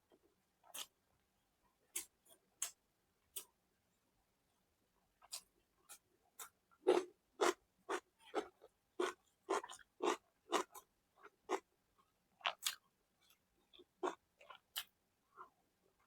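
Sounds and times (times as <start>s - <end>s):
person chewing and lip-smacking: 5.2s - 10.8s, 12.4s - 12.8s.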